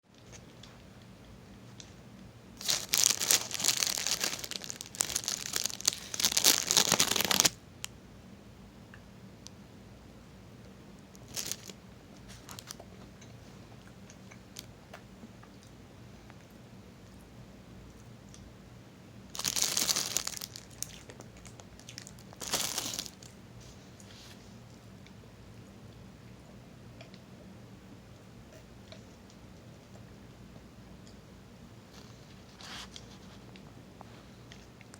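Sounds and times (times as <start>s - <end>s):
foil wrapper crinkling and tearing: 2.6s - 7.6s, 11.2s - 12.8s, 19.3s - 23.3s.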